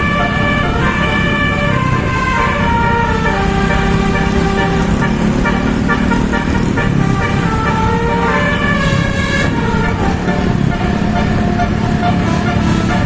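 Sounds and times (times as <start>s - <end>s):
multi-tone bus horn playing a tune: 0.0s - 13.0s
vehicle engine rumble: 0.0s - 13.0s.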